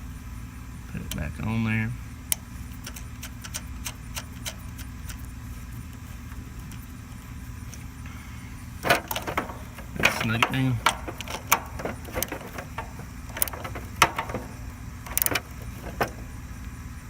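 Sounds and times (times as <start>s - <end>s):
steady low hum: 0.0s - 17.0s
wrench clicking on metal: 2.3s - 5.2s, 8.8s - 16.2s
metal clatter: 8.8s - 16.4s.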